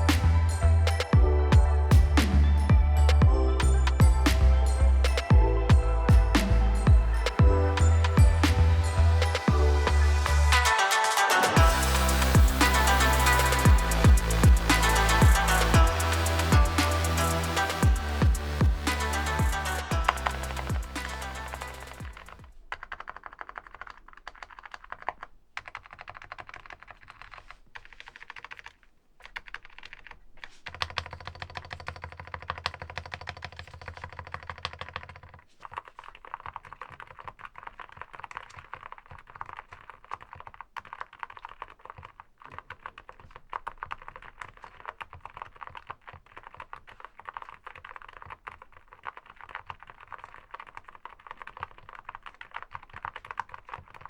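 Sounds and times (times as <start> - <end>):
fast typing on mechanical keyboard: 10.7 - 54.0.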